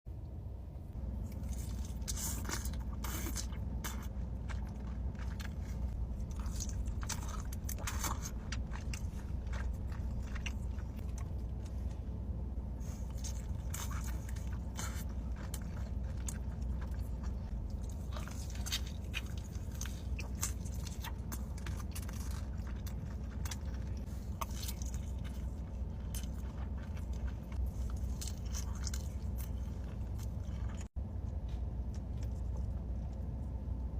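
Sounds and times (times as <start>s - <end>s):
steady low hum: 0.1s - 33.9s
crunching chews: 1.0s - 33.9s.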